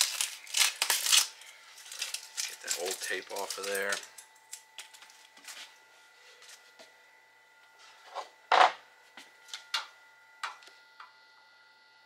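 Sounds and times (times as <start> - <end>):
tape peeling off hose: 0.0 - 3.7.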